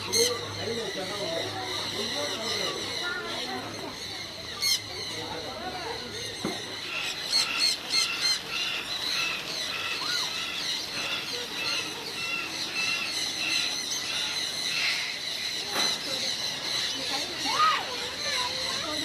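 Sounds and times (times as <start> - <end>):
small birds chirping and squawking: 0.0 - 19.0.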